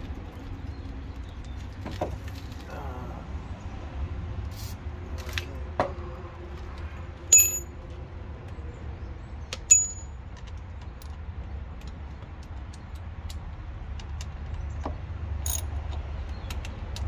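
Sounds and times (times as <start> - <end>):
sharp metallic clinks: 7.3 - 7.7, 9.6 - 10.2, 15.4 - 15.7.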